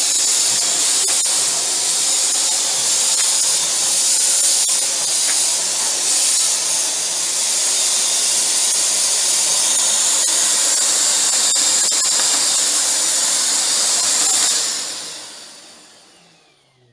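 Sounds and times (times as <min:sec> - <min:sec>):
vacuum cleaner running: 0:00.0 - 0:16.9.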